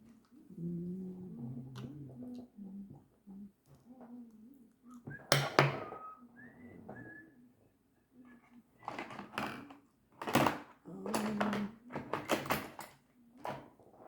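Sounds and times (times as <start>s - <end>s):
faint low humming: 0.0s - 8.7s.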